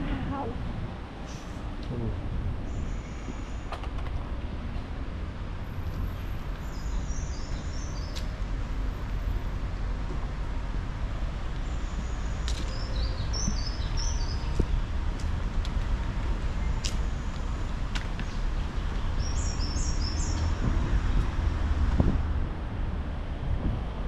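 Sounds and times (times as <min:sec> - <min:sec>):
low outdoor background rumble: 0:00.0 - 0:24.0
birds chirping: 0:11.6 - 0:14.9, 0:16.5 - 0:20.6.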